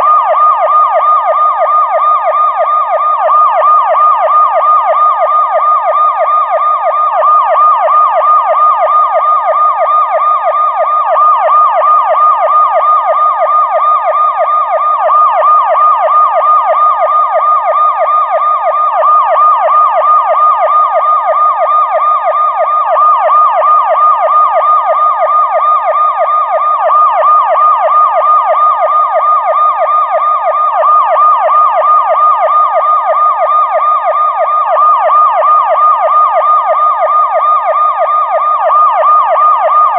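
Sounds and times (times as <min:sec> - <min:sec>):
police siren yelping: 0:00.0 - 0:39.9.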